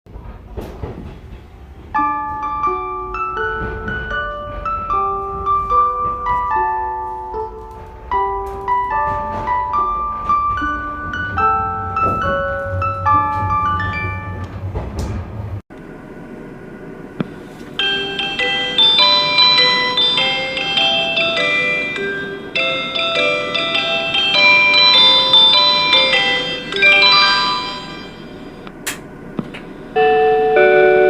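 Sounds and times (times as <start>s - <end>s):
bell-like chime melody over speaker: 17.8s - 28.6s.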